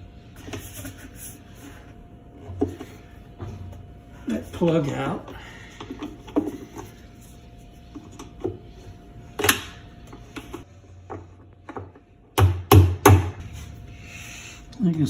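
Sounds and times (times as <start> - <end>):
knocks on metal: 12.4 - 13.4.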